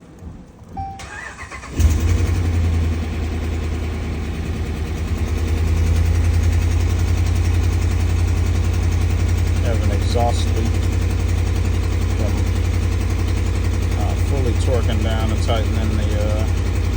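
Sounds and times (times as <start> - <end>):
engine cranking: 0.6 - 16.9
short chime: 0.8 - 1.1
engine idling unevenly: 0.8 - 16.9.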